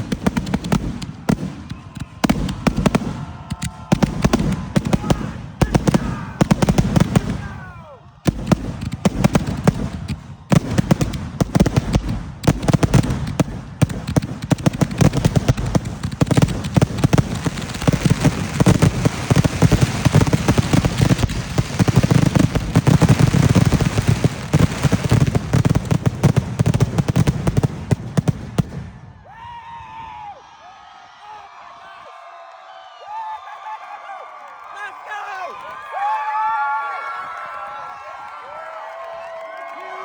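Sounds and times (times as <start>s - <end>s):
fireworks booming and crackling: 0.0s - 29.1s.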